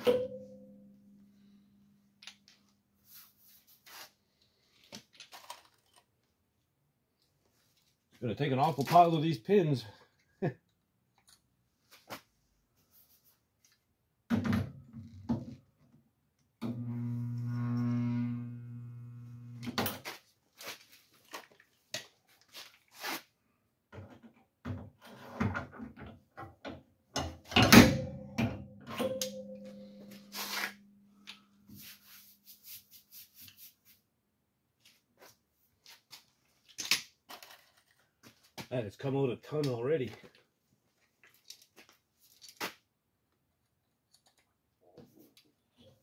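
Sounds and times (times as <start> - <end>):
metallic ringing tone: 0.0 - 1.4, 28.9 - 31.1
steady hum: 16.8 - 19.7.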